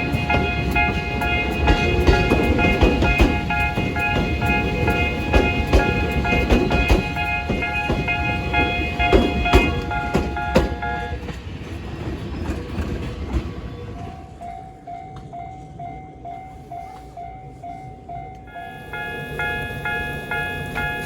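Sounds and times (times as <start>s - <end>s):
level crossing warning bell: 0.0s - 11.4s, 13.8s - 21.0s
train wheels knocking on rails: 0.0s - 13.6s.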